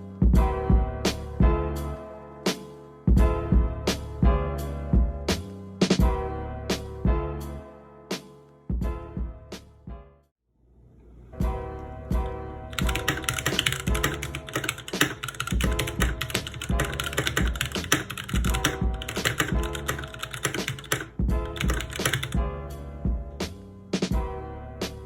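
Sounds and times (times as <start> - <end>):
background music with steady beat: 0.0 - 10.3, 11.3 - 25.0
mechanical keyboard typing: 12.7 - 22.4.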